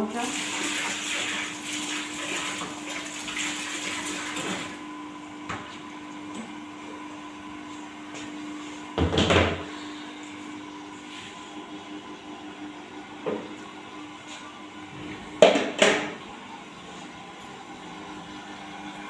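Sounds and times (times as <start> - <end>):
electric mixer humming: 0.0 - 19.0
water pouring into bucket: 0.1 - 4.8.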